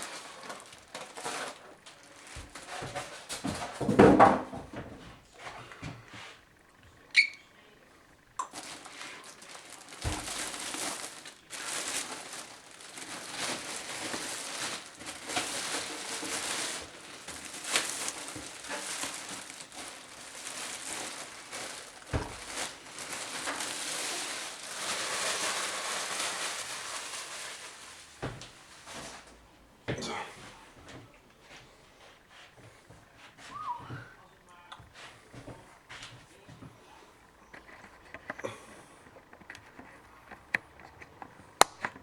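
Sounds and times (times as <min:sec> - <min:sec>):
plastic packaging crinkling: 0:00.0 - 0:04.4, 0:08.3 - 0:29.4, 0:37.2 - 0:42.0.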